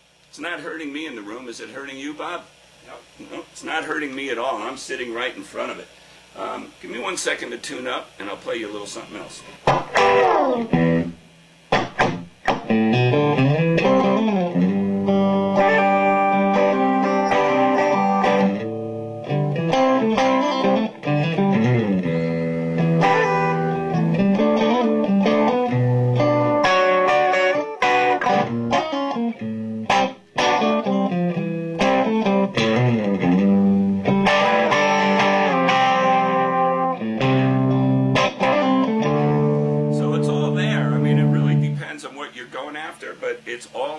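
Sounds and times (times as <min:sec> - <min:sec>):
bluesy electric guitar licks: 0:09.3 - 0:42.0.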